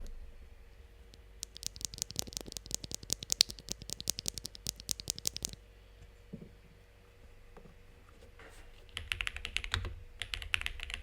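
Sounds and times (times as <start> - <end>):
mechanical keyboard typing: 1.2 - 5.6, 8.9 - 11.0.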